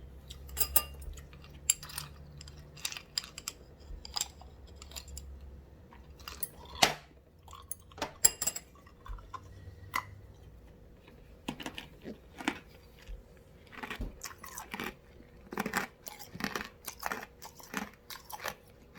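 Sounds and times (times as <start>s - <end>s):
ice crunching being chewed: 5.9s - 6.8s, 7.4s - 8.0s, 8.7s - 18.9s.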